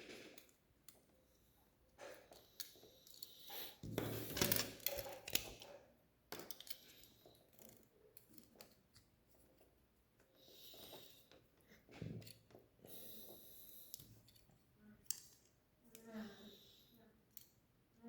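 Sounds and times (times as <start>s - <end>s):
plastic pieces clicking and rattling: 4.1s - 5.7s.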